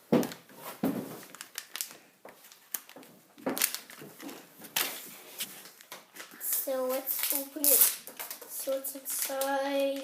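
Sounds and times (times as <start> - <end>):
plastic packaging rustling: 0.1 - 10.0.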